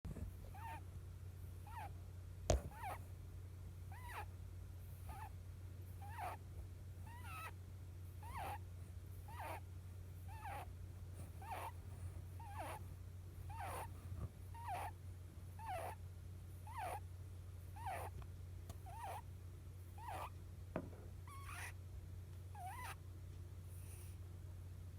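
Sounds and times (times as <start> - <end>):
rabbit squeaky snoring: 0.2 - 0.9, 1.6 - 3.1, 3.9 - 4.3, 4.9 - 6.4, 7.0 - 7.6, 8.2 - 17.1, 17.7 - 18.2, 18.8 - 20.4, 21.2 - 21.8, 22.5 - 23.0, 23.6 - 24.2.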